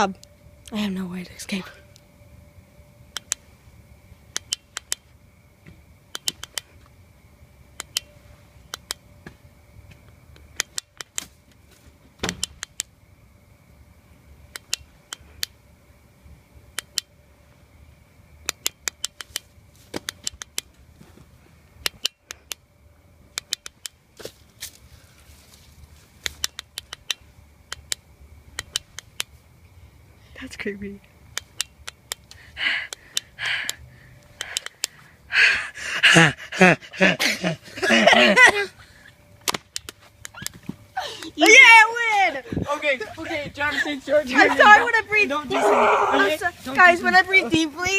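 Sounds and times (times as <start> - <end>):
faint hum with high whine: 0.0 - 47.9
sharp clicks and taps: 6.1 - 6.7, 10.4 - 11.3, 14.5 - 15.6, 18.4 - 19.4, 20.0 - 20.8, 23.3 - 24.0, 26.2 - 28.0, 28.6 - 29.3, 31.3 - 35.0, 39.4 - 41.3.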